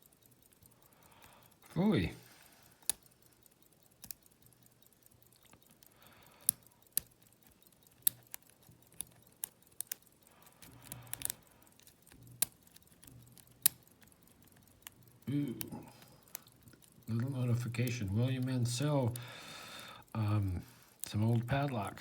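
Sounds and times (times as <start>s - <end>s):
metallic lock-picking clicks: 2.6s - 19.2s.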